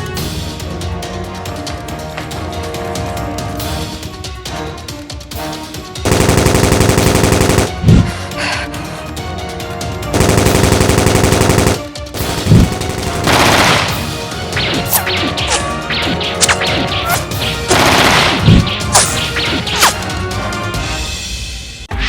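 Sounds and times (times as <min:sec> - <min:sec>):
background music: 0:00.0 - 0:22.0
automatic gunfire bursts: 0:06.1 - 0:08.1, 0:10.2 - 0:14.1, 0:17.7 - 0:18.6.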